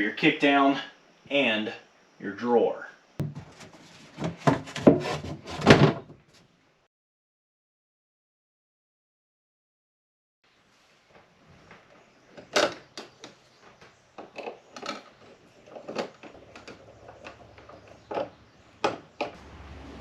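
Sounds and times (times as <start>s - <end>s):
wooden cabinet parts knocking: 3.2s - 6.1s.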